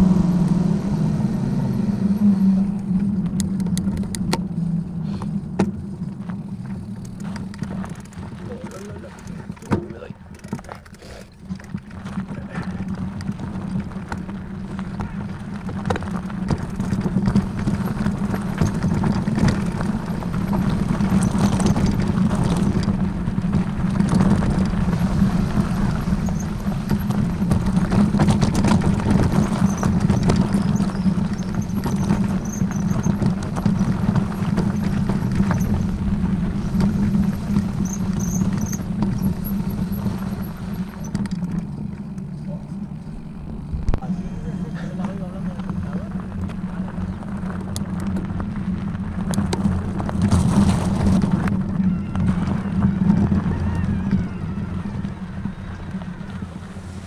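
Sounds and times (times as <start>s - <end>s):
vehicle rumbling: 0.0s - 57.0s
rattles and knocks: 6.6s - 25.0s.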